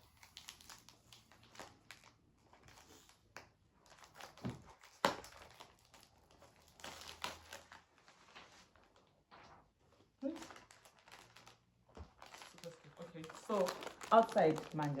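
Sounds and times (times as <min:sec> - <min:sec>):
plastic snack packet crinkling: 0:00.0 - 0:09.1, 0:10.2 - 0:15.0.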